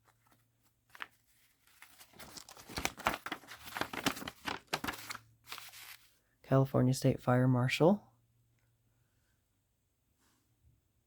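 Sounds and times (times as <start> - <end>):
paper rustling and crinkling: 0.0 - 6.2.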